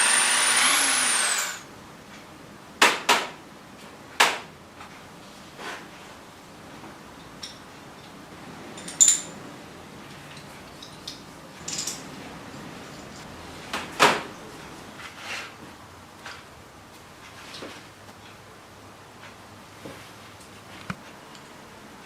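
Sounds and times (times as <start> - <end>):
small metal parts clinking: 8.8 - 9.4, 10.3 - 13.2.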